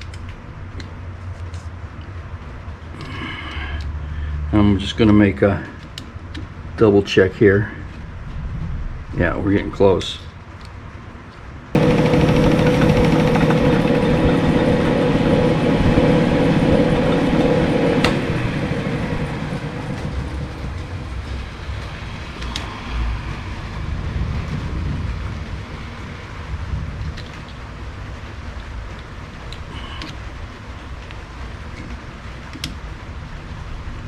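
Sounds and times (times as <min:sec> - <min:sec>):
metal lathe humming: 0:11.8 - 0:22.4.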